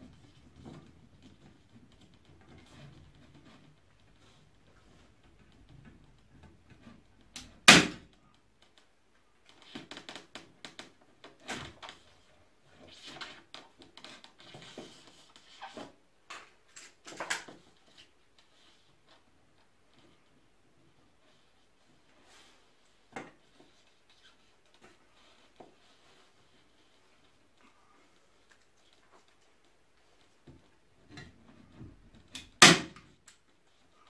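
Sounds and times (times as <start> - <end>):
small clicks taps and rustles: 0.0 - 22.2, 22.8 - 34.0.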